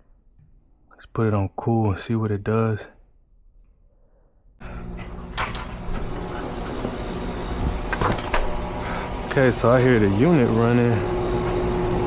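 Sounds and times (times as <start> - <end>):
heat pump hum and fan rush: 4.6 - 12.0.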